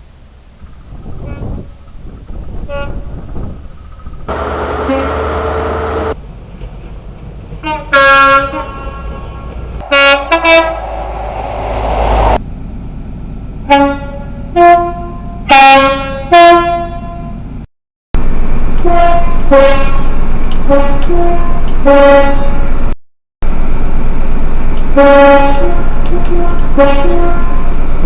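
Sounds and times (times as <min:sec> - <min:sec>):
train running rumble: 0:00.1 - 0:12.4
two-tone train horn blasts: 0:02.7 - 0:03.2, 0:04.8 - 0:05.3, 0:07.6 - 0:12.4, 0:13.7 - 0:17.4, 0:18.8 - 0:22.9, 0:24.9 - 0:27.8.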